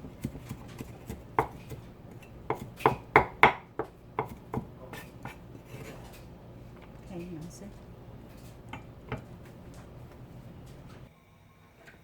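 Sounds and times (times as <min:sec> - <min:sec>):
knife chopping on cutting board: 0:00.0 - 0:06.2.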